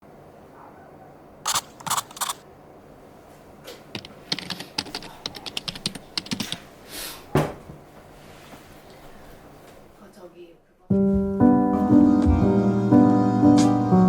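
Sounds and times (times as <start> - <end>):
keyboard keystrokes: 1.5 - 2.4, 3.9 - 6.6.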